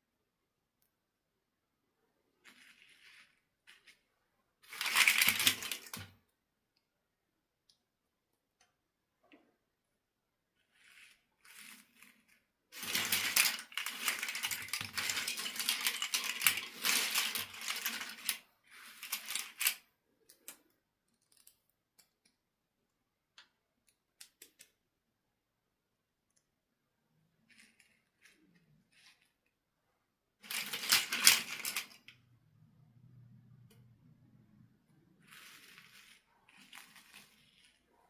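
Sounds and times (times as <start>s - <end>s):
plastic packaging crinkling: 4.7s - 6.0s, 12.8s - 19.8s.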